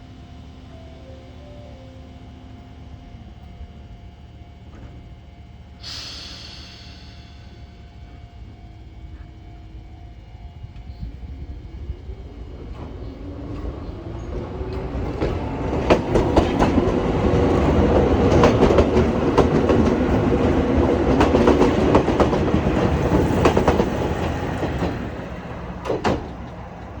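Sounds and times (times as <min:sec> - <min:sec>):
train rumbling past: 0:00.0 - 0:27.0
wheels clicking over rail joints: 0:12.2 - 0:27.0.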